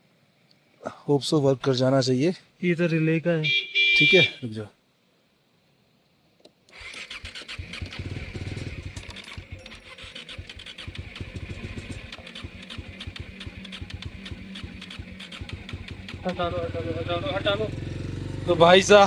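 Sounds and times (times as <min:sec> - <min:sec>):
motorcycle engine starting and idling: 0:06.7 - 0:19.0.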